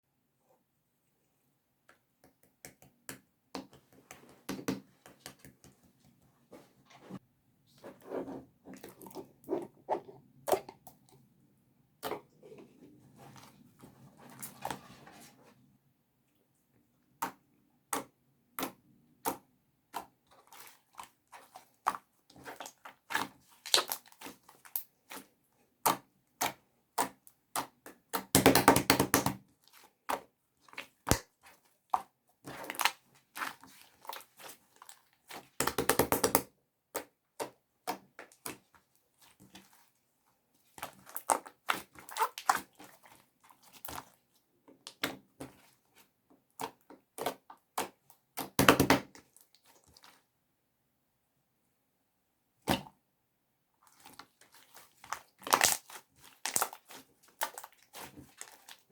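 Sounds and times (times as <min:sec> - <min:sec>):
slime clicking and popping: 0:55.4 - 0:55.8.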